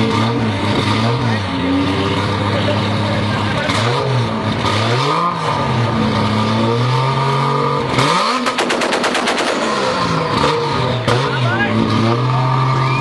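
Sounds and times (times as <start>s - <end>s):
car engine revving: 0.0s - 13.0s
exhaust pops and crackles: 8.3s - 10.2s.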